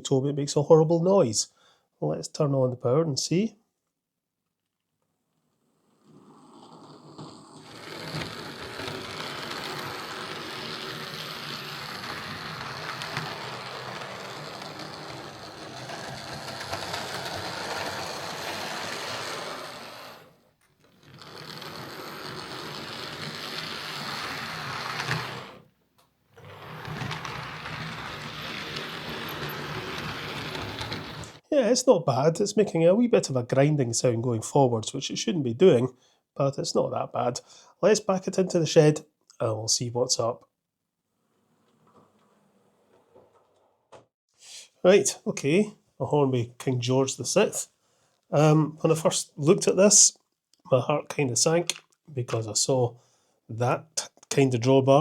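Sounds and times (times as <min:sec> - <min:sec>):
model locomotive motor whirring: 0:06.0 - 0:25.6, 0:26.4 - 0:31.4.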